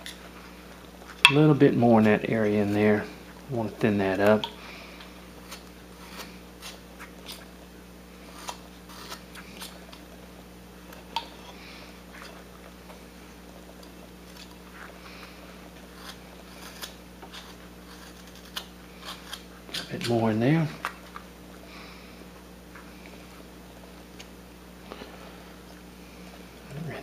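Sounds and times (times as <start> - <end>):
knife carving wood: 4.1 - 7.5, 8.2 - 10.0, 13.8 - 21.2.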